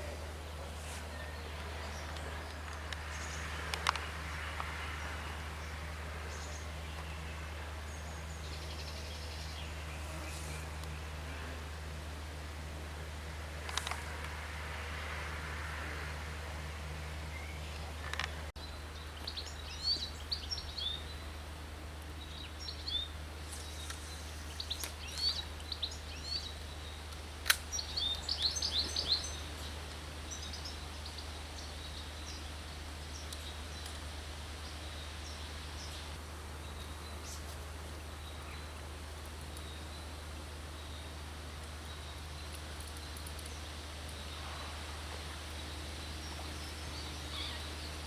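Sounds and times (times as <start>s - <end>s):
small birds chirping: 15.8s - 21.4s, 22.0s - 48.0s.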